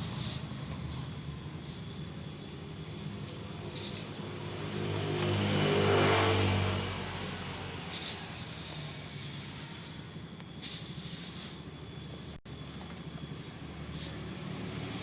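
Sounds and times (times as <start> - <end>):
vehicle engine passing by: 0.0 - 9.9.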